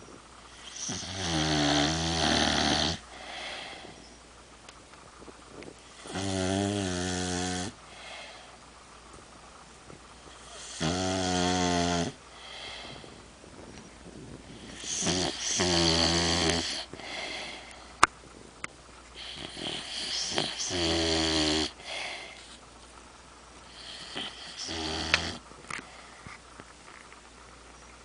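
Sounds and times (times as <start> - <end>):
dog snoring: 0.5 - 3.9, 5.8 - 8.4, 10.3 - 13.0, 14.5 - 17.6, 19.2 - 22.4, 23.7 - 25.4.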